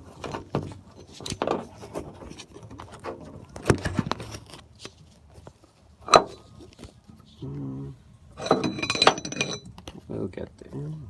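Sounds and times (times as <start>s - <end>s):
metal parts clicking and scraping: 8.4s - 9.8s.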